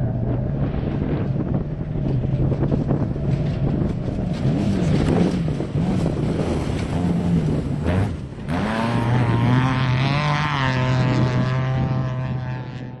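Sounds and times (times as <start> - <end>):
race buggy engines passing: 3.3 - 13.0.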